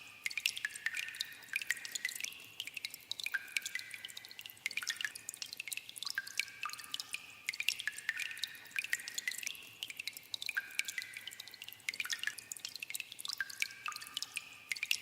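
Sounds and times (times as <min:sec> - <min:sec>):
water dripping in a cave: 0:00.0 - 0:15.0.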